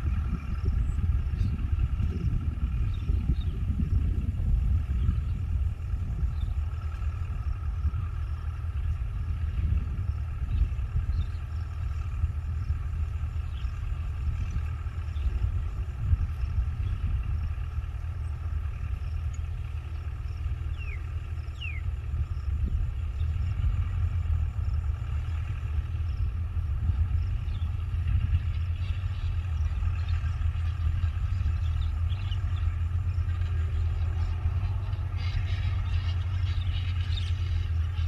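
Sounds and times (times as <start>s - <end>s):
excavator diesel engine rumbling: 0.0s - 38.0s.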